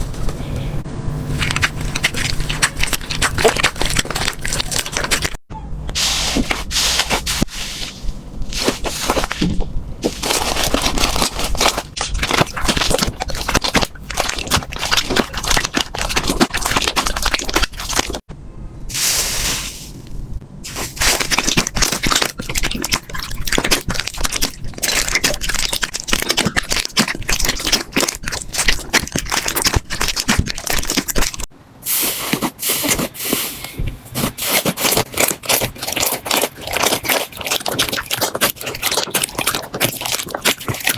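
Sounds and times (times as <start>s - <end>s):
slime squished by hand: 6.2s - 18.3s, 20.7s - 33.4s, 34.1s - 40.9s.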